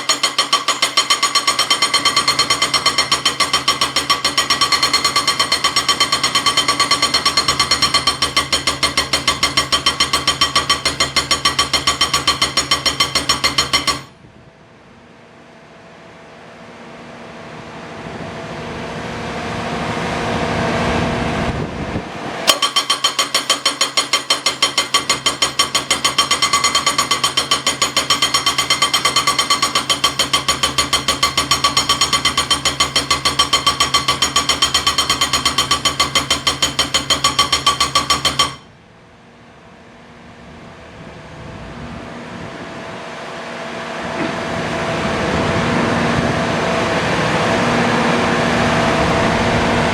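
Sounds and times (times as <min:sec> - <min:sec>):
hydraulic breaker hammering: 0:00.0 - 0:14.2, 0:22.5 - 0:38.7.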